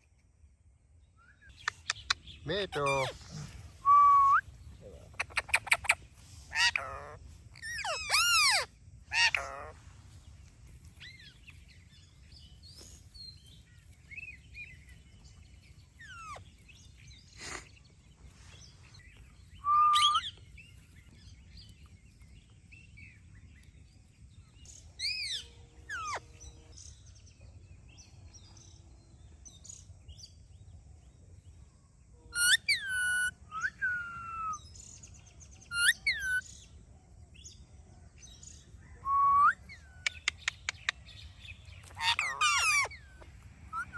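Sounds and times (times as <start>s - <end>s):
faint parrot chirps: 1.2s - 10.3s, 15.6s - 21.8s, 24.6s - 27.3s, 32.3s - 36.8s, 38.2s - 43.9s
parrot calling: 5.0s - 9.8s, 19.6s - 20.3s, 32.4s - 34.6s, 35.7s - 36.4s, 41.8s - 43.9s.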